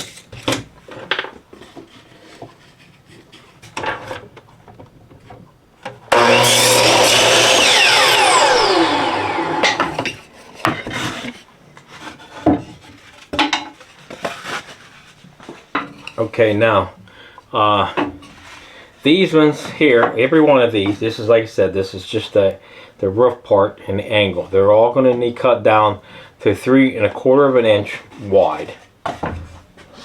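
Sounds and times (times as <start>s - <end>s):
power saw cutting wood: 6.1s - 10.2s.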